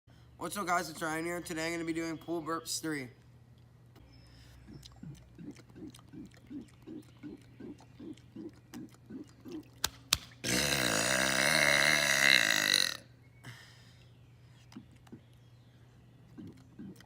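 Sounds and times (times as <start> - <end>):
man burping: 10.4 - 13.1.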